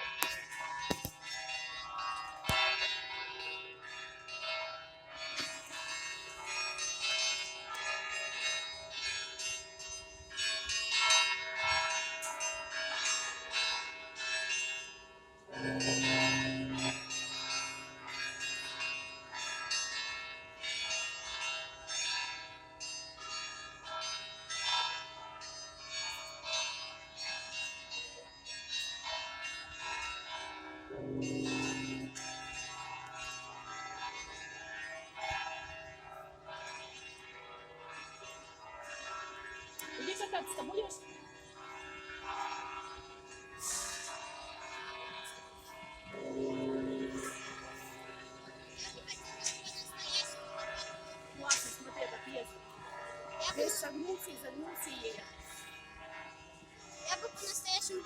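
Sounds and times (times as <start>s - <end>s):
peal of small high bells: 0.0s - 58.0s
large low bell struck: 15.4s - 21.4s, 25.9s - 36.2s, 43.6s - 56.0s.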